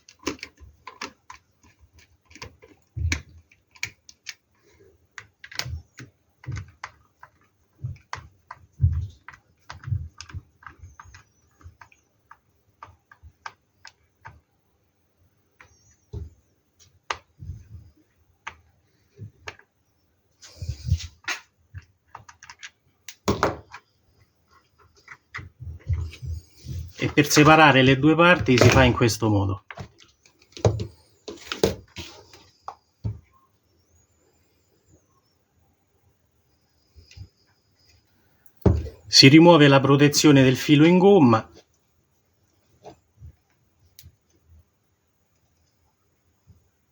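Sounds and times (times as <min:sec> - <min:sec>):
screwdriver clicking on plastic: 0:00.0 - 0:04.5, 0:05.2 - 0:14.4.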